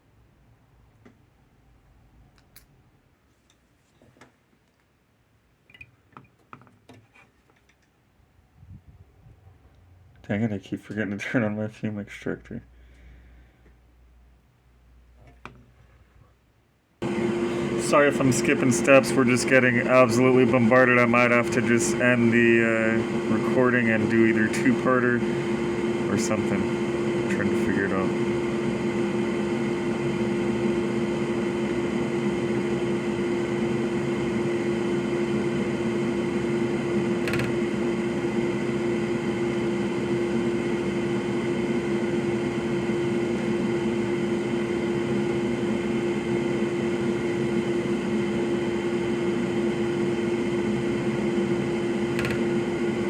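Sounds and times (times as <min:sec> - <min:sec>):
electric blower fan humming: 0:17.0 - 0:53.0.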